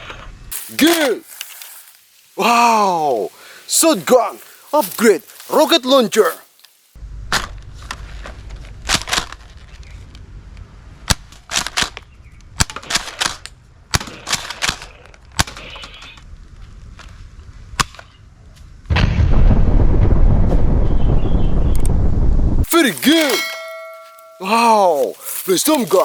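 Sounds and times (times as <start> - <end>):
low steady rumble: 18.4 - 22.7.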